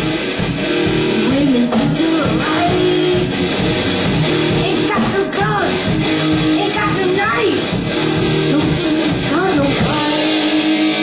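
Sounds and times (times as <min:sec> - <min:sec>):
live rock band playing: 0:00.0 - 0:11.0.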